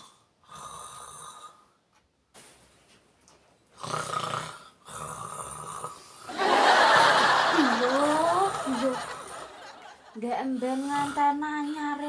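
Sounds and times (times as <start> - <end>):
man snoring: 0.0 - 1.8, 3.8 - 6.3, 10.6 - 11.9.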